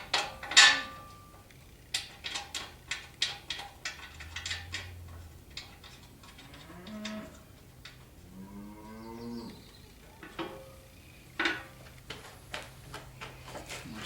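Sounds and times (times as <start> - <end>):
cattle mooing: 6.4 - 7.4, 8.2 - 9.6.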